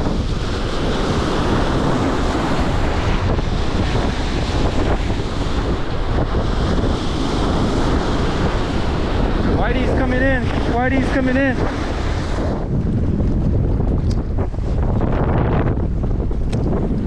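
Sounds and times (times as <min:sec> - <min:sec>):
waves washing against boat: 0:00.0 - 0:17.0
wind buffeting microphone: 0:00.0 - 0:17.0.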